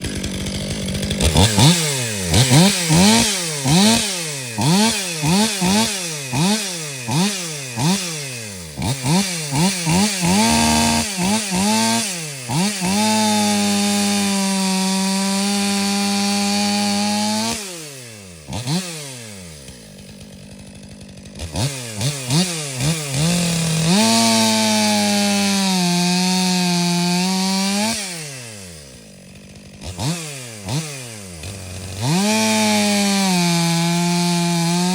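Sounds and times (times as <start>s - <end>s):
chainsaw revving and cutting wood: 0.0s - 34.9s.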